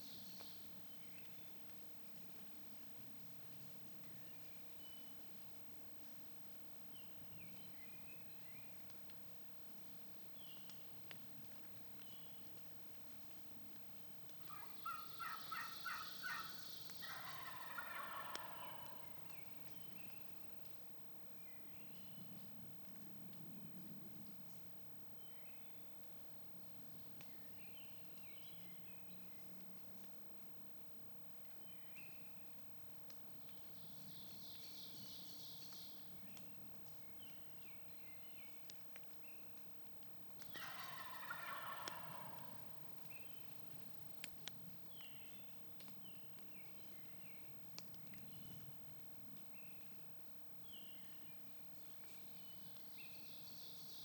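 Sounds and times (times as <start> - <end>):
songbirds chirping: 0.0 - 54.0
turkey gobbling: 14.4 - 19.4, 40.5 - 42.9.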